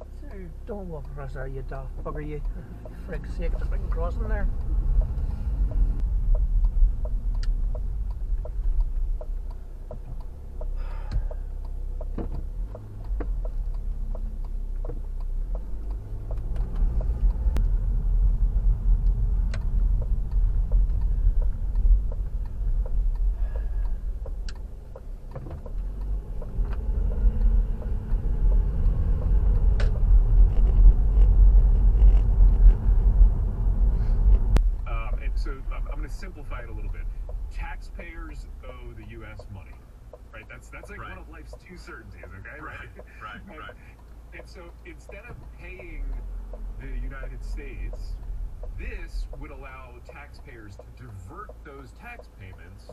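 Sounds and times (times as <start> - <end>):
car engine and road rumble: 0.0 - 52.9
light clicks and knocks: 19.0 - 32.8.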